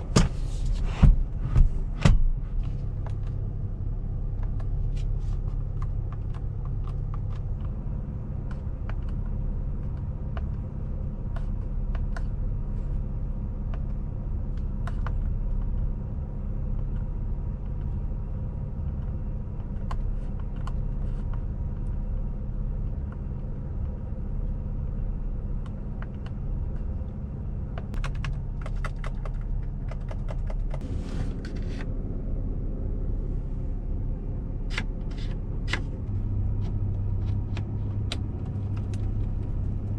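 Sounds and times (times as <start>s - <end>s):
low engine drone in cab: 0.0s - 39.9s
sharp clicks and knocks: 25.6s - 30.8s.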